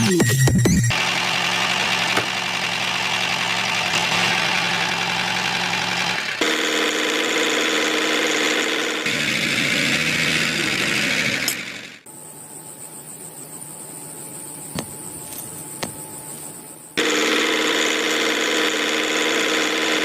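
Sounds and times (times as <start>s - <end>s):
engine running steadily: 0.8s - 12.2s, 14.4s - 20.0s.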